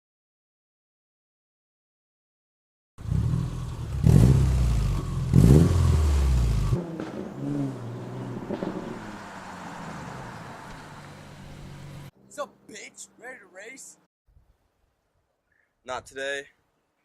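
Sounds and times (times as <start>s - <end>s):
car engine revving: 3.0s - 12.1s.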